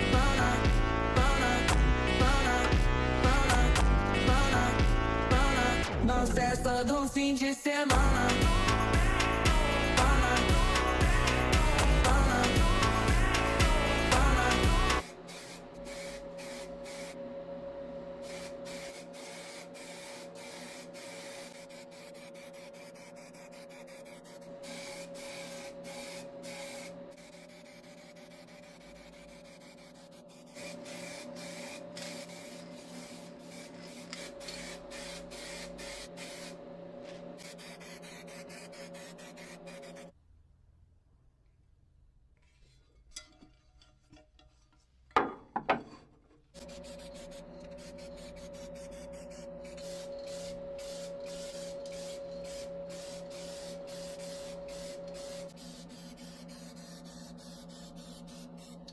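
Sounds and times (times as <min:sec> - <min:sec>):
small motor tool running: 0:12.8 - 0:40.1, 0:46.6 - 0:58.9.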